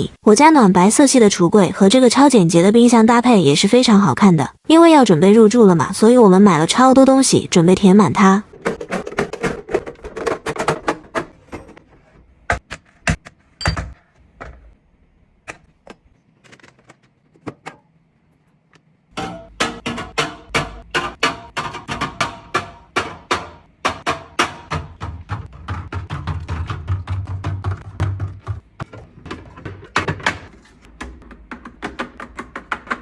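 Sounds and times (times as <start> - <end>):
items knocking on fridge shelves: 8.5 - 14.8, 19.1 - 33.0.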